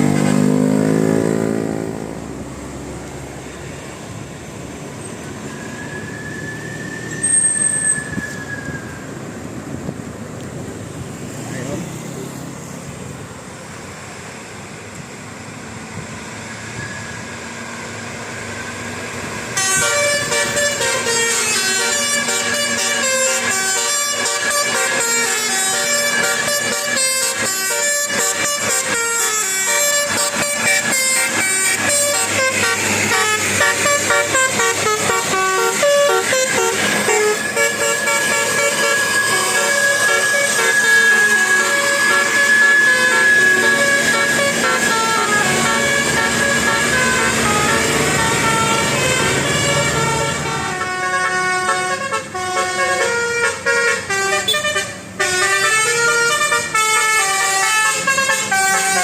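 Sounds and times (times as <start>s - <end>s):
road and engine noise: 0.0s - 59.0s
musical bus horn tune: 19.5s - 59.0s.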